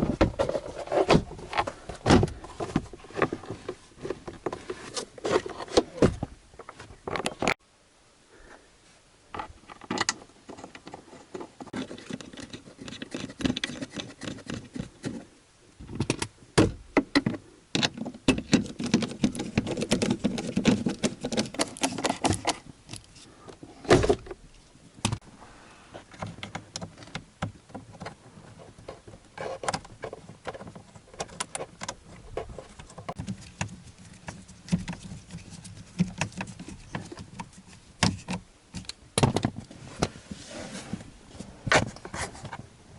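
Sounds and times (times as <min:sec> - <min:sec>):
rustling: 0:00.0 - 0:07.6, 0:17.4 - 0:42.9
plastic parts clicking and rattling: 0:09.4 - 0:15.2, 0:17.0 - 0:23.2.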